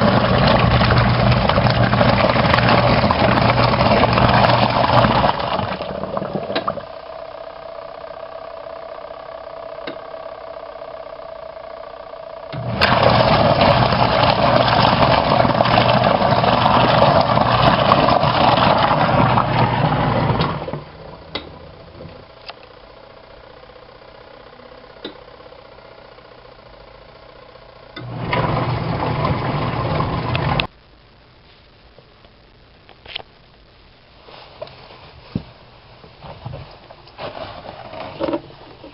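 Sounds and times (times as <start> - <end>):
washing machine motor hum: 0.0 - 30.7
washing machine whir: 0.0 - 30.7, 35.1 - 38.9.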